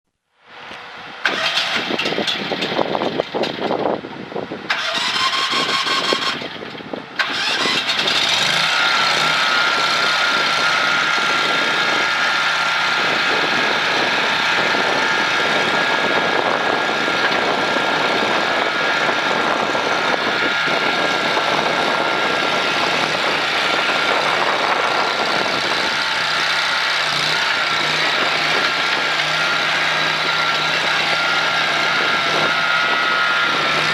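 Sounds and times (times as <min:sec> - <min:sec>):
constant high whine: 0:00.2 - 0:33.9
small engine running: 0:00.5 - 0:03.9, 0:04.7 - 0:33.9
engine starter cranking: 0:01.2 - 0:03.8, 0:04.7 - 0:10.7.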